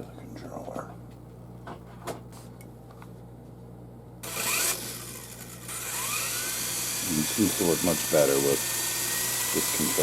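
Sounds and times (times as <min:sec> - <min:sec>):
toy helicopter rotor whirring: 0:04.2 - 0:10.0.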